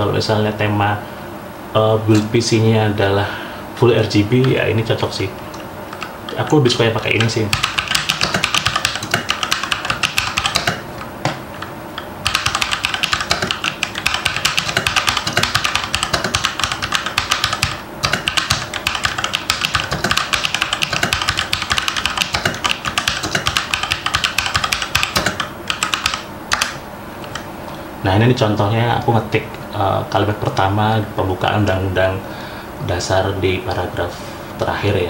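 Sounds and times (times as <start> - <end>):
mechanical keyboard typing: 7.1 - 11.4, 12.2 - 26.8.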